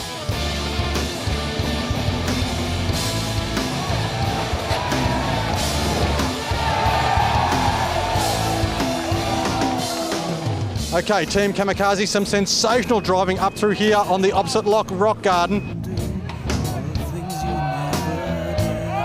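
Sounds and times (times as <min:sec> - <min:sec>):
distorted electric guitar: 0:00.0 - 0:10.9
steady drum beat: 0:00.0 - 0:13.6.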